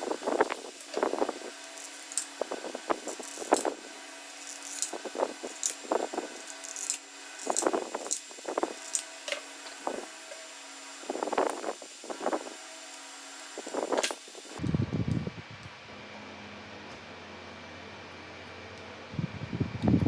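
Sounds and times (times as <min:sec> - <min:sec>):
steady low hum: 0:00.0 - 0:20.0
small parts and tools clicking: 0:00.2 - 0:10.5.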